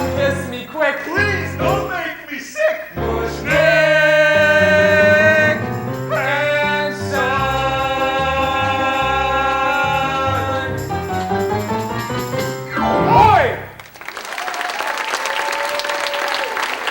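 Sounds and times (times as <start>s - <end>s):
instrumental accompaniment: 3.0s - 13.9s.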